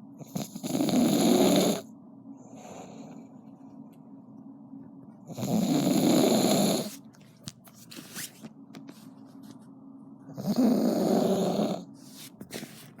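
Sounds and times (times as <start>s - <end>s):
person snoring: 0.3s - 1.9s, 5.3s - 6.9s, 10.4s - 11.9s
quiet breathing: 2.2s - 3.8s.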